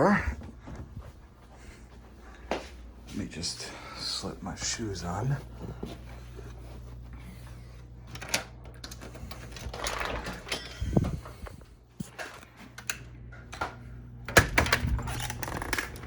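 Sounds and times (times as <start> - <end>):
low steady hum: 0.0 - 16.0
footsteps: 0.1 - 8.0.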